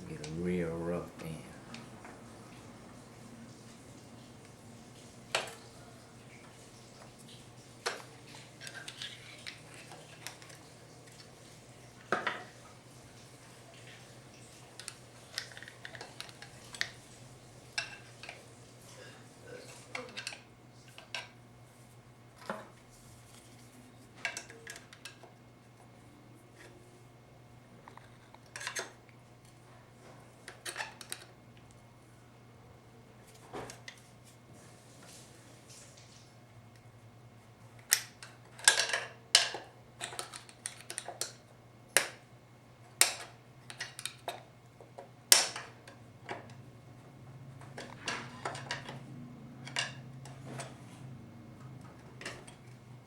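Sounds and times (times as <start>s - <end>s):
steady low hum: 0.0s - 5.0s.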